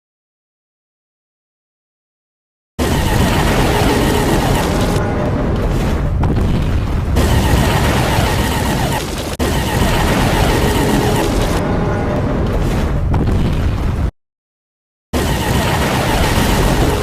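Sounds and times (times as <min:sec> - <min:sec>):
explosion rumble: 0:02.8 - 0:14.1.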